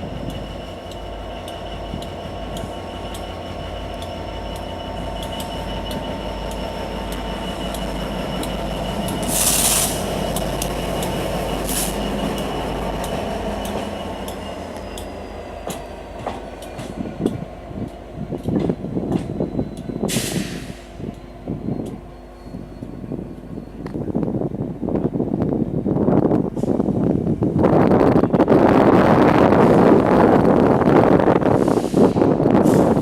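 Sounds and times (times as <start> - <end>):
train rumbling on rails: 0.0 - 33.0
sharp hiss: 9.2 - 10.3, 31.5 - 33.0.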